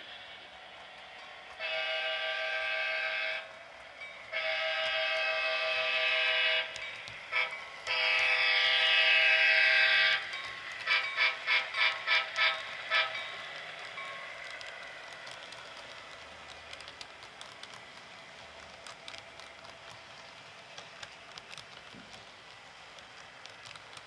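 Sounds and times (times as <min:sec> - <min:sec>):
locomotive horn chord through small speaker: 0:01.6 - 0:03.4, 0:04.3 - 0:06.7.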